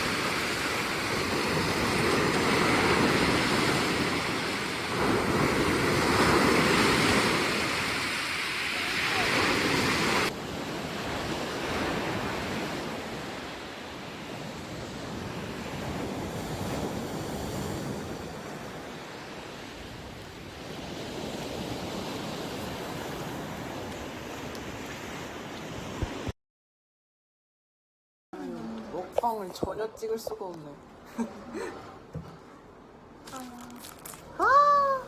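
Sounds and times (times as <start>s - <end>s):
sea waves breaking on shore: 0.0s - 26.3s.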